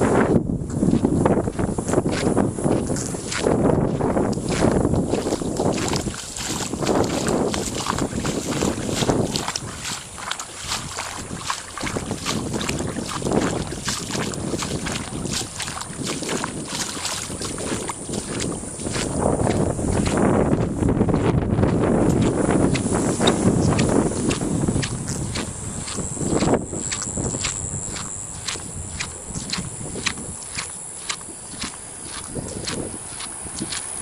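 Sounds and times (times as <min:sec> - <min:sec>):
wind buffeting microphone: 0:00.0 - 0:34.0
water splashing and sloshing: 0:00.9 - 0:34.0.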